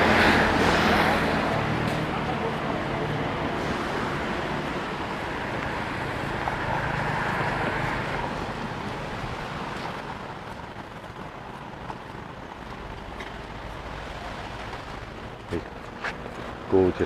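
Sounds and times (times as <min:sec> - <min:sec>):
vehicle passing by: 0:00.0 - 0:10.5
steady outdoor rumble: 0:00.0 - 0:17.0.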